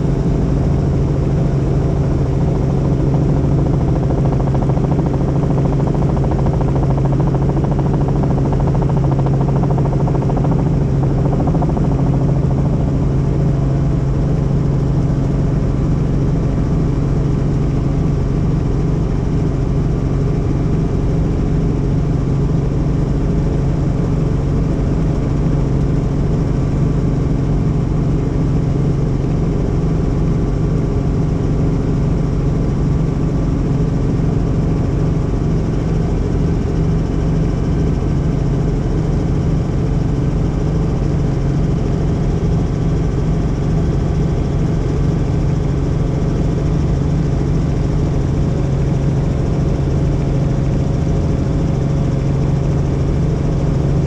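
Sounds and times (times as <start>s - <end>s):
helicopter engine and rotor drone: 0.0s - 54.0s.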